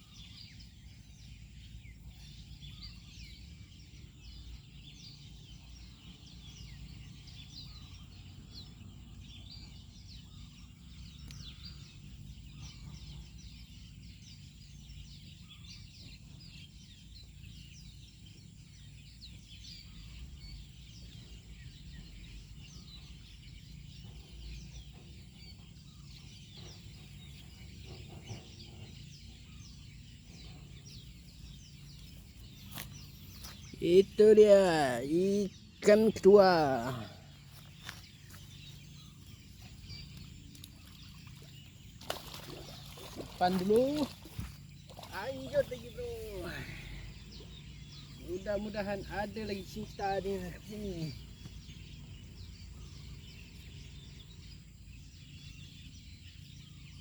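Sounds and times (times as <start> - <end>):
low steady rumble: 0.0 - 34.2, 37.0 - 43.3
small birds chirping: 0.0 - 57.0.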